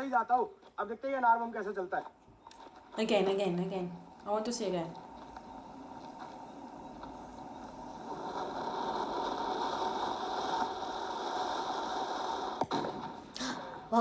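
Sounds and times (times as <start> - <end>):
fountain firework hissing sparks: 7.8 - 13.1.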